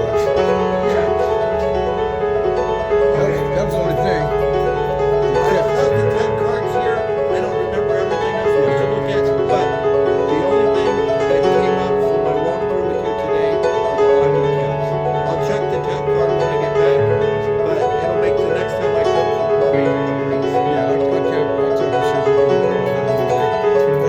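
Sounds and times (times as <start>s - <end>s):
background piano music: 0.0s - 24.0s.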